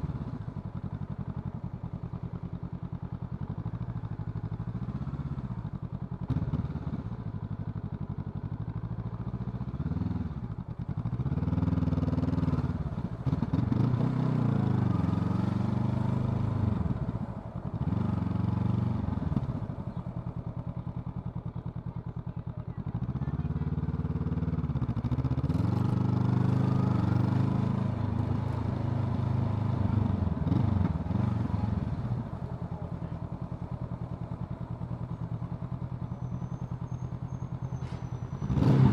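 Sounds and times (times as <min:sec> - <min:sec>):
motorcycle engine revving: 0:09.5 - 0:22.0, 0:22.9 - 0:37.0, 0:37.8 - 0:38.9.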